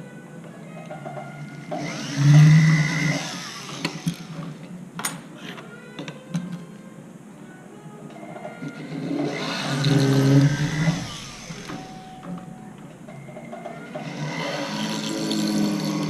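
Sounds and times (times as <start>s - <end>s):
rotary tool drilling metal: 1.6s - 4.6s, 8.8s - 12.2s, 14.0s - 16.0s.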